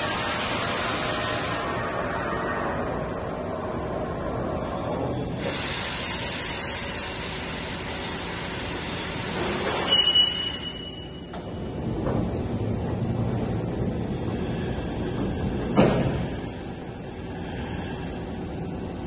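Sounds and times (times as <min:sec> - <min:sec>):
hiss of spray: 0:00.0 - 0:02.3, 0:05.4 - 0:09.9
machining center running: 0:00.0 - 0:19.0.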